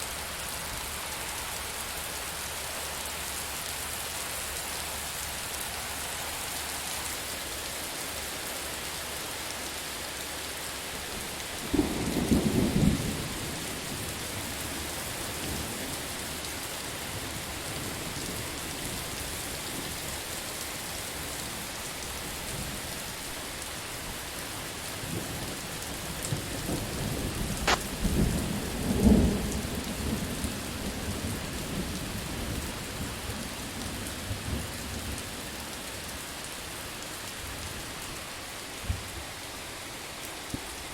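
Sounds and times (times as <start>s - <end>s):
steady rain: 0.0s - 40.9s
rolling thunder rumble: 11.6s - 14.6s.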